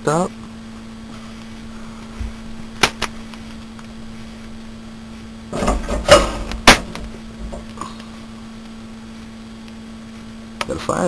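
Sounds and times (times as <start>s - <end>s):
steady low hum: 0.0s - 11.0s
clattering handling noise: 5.5s - 7.9s
sharp knock: 5.6s - 7.2s.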